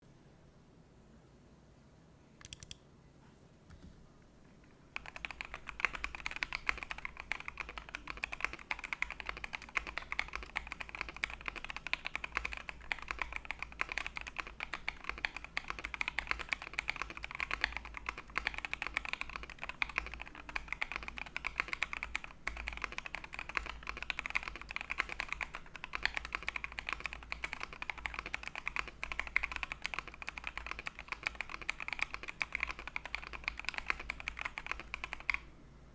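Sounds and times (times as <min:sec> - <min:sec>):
mechanical keyboard typing: 0:02.4 - 0:02.8, 0:04.9 - 0:35.5.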